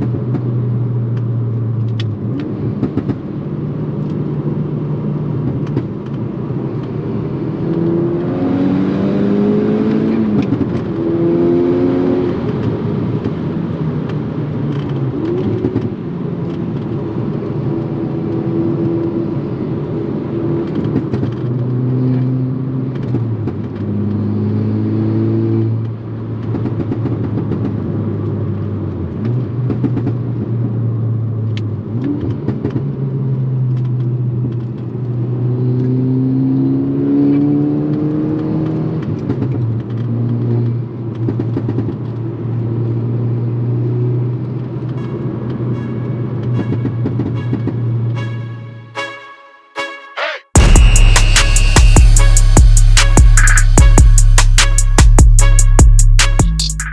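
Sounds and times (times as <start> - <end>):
car engine accelerating through gears: 0.0 - 44.8
road and wind noise: 0.0 - 49.3.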